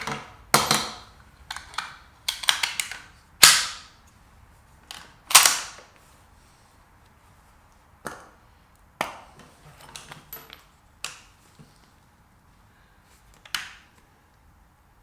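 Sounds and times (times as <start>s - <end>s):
rifle bolt metallic clicks: 1.5s - 3.8s.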